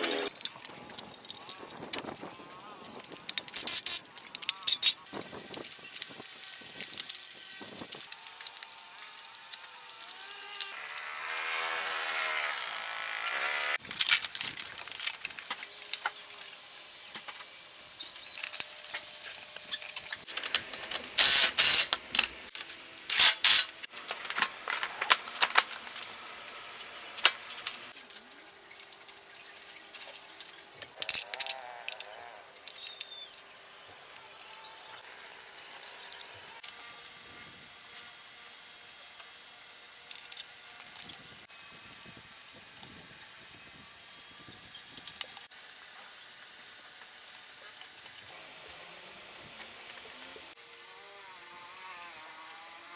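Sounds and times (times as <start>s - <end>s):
hand tools clinking: 0.0s - 5.1s.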